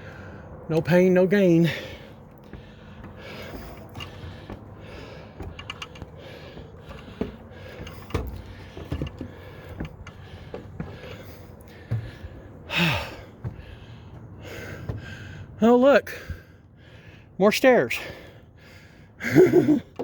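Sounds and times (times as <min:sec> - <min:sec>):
footsteps on stairs: 0:00.0 - 0:15.4
man breathing heavily: 0:00.0 - 0:20.0.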